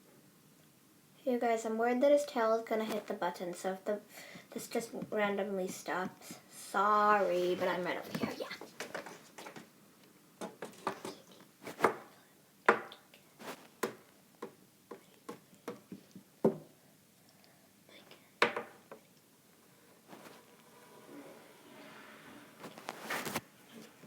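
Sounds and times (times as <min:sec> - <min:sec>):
taps and knocks: 0:12.7 - 0:13.0, 0:18.4 - 0:19.0.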